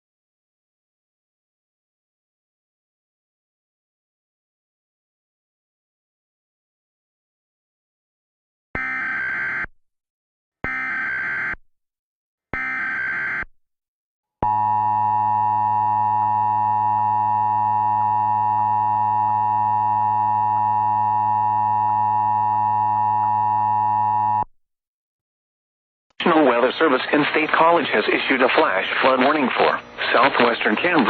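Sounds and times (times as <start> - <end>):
steady attention tone: 14.4 - 24.5.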